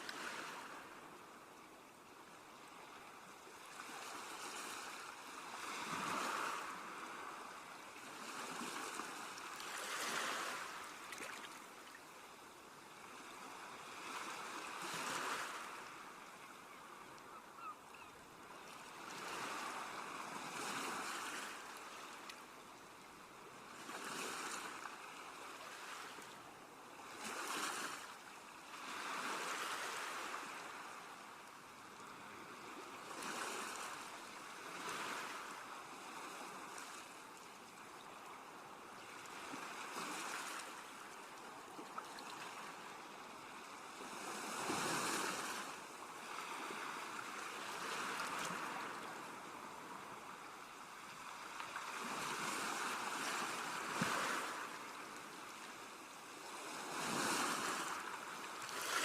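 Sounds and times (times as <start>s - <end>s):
sea waves washing onto shore: 2.8s - 12.0s, 27.1s - 59.0s.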